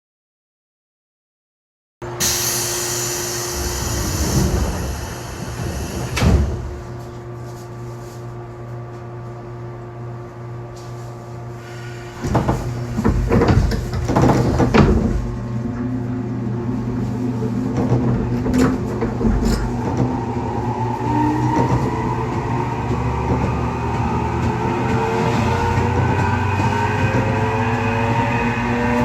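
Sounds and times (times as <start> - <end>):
train traction motor whine: 2.0 - 8.2, 15.2 - 29.0
train clunks and rattles: 2.2 - 7.3, 11.7 - 16.1, 16.8 - 27.7.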